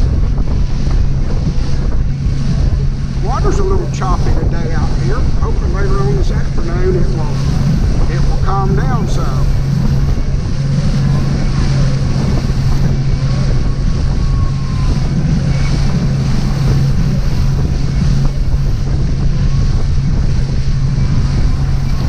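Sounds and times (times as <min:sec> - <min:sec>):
choppy water rushing: 0:00.0 - 0:22.0
motorboat engine humming: 0:00.0 - 0:22.0
wind buffeting microphone: 0:00.0 - 0:22.0.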